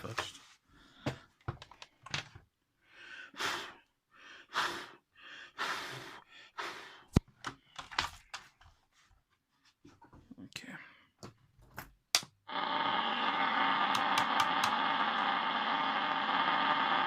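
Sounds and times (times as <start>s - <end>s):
person blowing hard: 3.4s - 3.8s, 4.5s - 5.0s, 12.5s - 17.0s.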